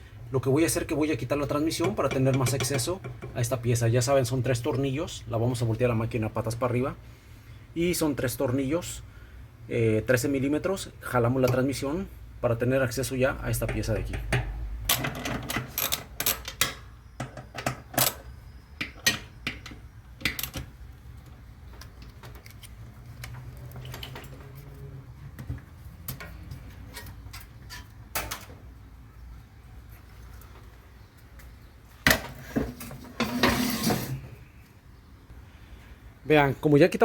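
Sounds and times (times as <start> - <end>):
metal tools clicking and knocking: 1.7 - 3.5, 13.6 - 20.7.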